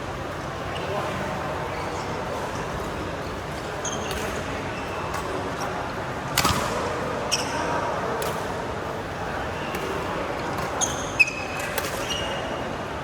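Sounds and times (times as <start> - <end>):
murmur of voices: 0.0 - 13.0
shoe squeaks on court floor: 3.8 - 5.0, 7.3 - 7.7, 10.7 - 12.4.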